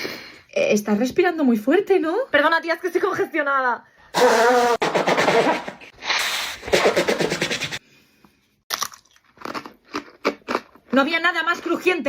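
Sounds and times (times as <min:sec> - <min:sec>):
chewing crunchy snack: 0:08.7 - 0:10.9.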